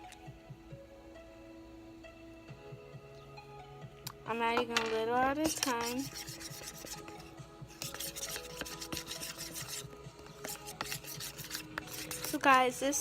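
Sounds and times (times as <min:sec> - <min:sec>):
glue being stirred: 0:05.4 - 0:12.8.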